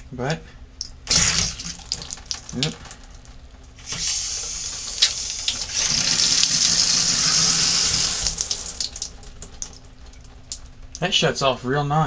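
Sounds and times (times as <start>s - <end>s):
water running from shower: 1.1s - 3.2s, 3.8s - 10.6s.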